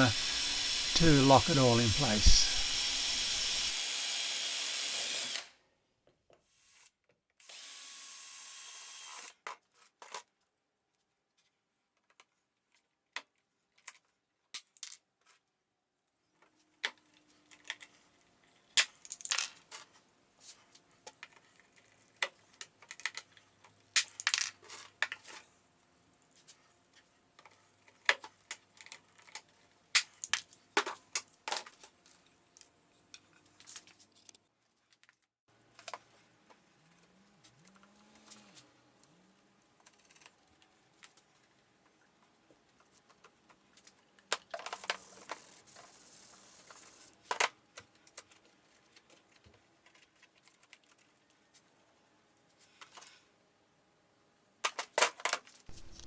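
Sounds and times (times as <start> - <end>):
faint steady hum: 0.0 - 3.8
power drill running: 0.0 - 5.5, 55.7 - 56.0.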